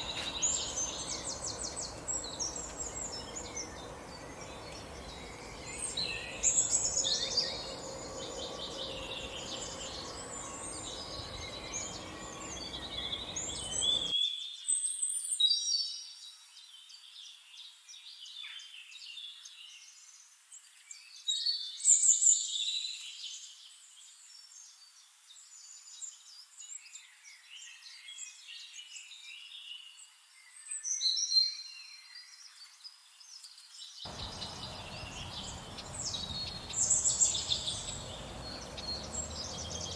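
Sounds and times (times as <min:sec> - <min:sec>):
songbirds singing and chirping: 0:00.0 - 0:14.1, 0:34.1 - 0:39.9.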